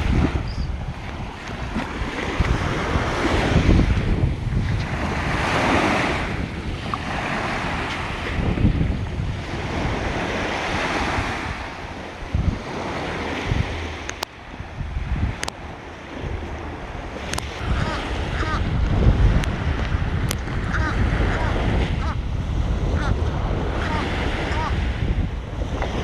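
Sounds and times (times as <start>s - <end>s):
ocean surf breaking: 0.0s - 26.0s
wind rumbling on microphone: 0.0s - 26.0s.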